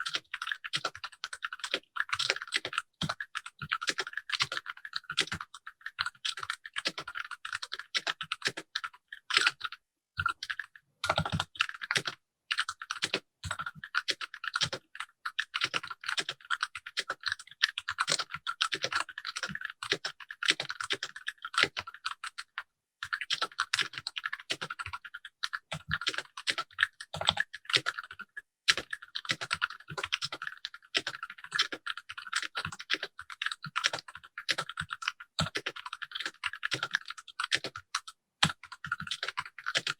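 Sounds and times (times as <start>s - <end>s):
mechanical keyboard typing: 38.4s - 39.9s.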